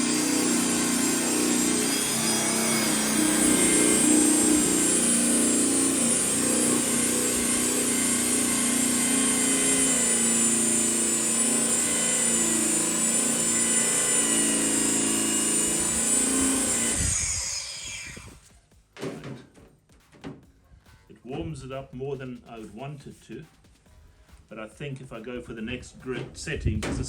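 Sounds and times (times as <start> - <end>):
drum sander sanding metal: 0.0 - 20.4.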